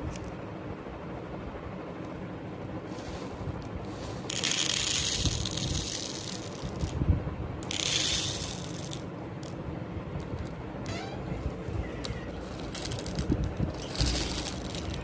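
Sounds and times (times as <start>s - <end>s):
beads rattling in packaging: 2.9s - 7.0s, 7.6s - 9.6s, 11.4s - 15.0s.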